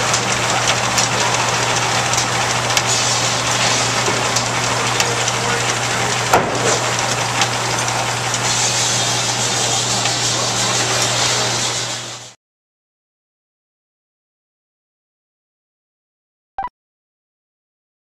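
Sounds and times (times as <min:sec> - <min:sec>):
low machinery hum: 0:00.0 - 0:12.4
sawmill mechanical clatter: 0:00.0 - 0:12.4.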